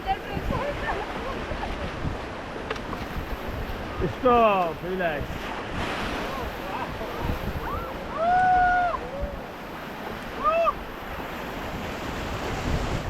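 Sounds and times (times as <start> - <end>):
river water rushing: 0.0 - 13.0
wind buffeting microphone: 0.0 - 13.0
person whooping: 7.7 - 9.4, 10.4 - 10.8.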